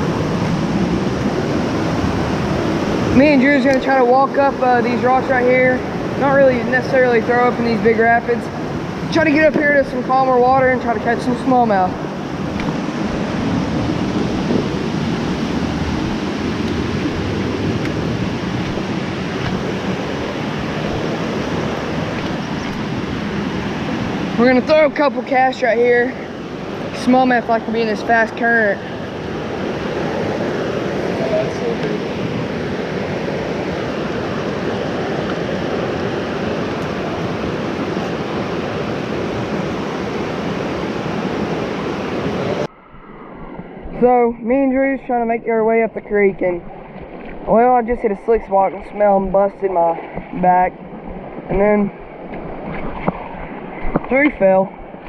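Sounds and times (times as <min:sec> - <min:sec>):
water rushing through rapids: 0:00.0 - 0:42.7.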